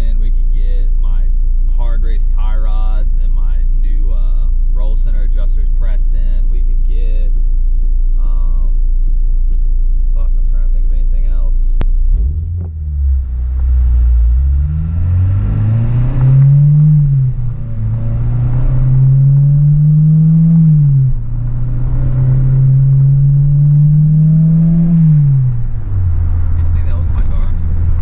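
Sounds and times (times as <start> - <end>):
car engine accelerating hard: 11.8 - 28.0.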